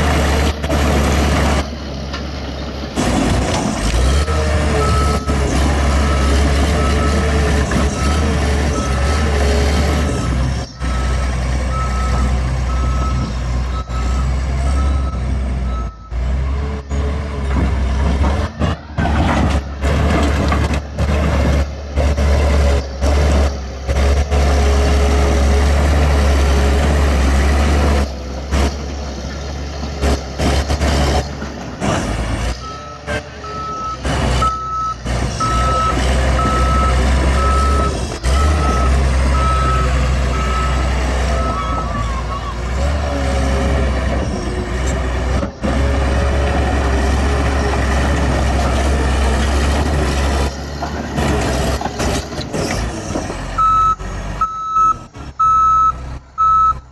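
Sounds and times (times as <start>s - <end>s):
bulldozer diesel engine running: 0.0s - 56.9s
reversing alarm beeping: 4.7s - 17.0s, 32.6s - 42.6s, 53.6s - 56.9s.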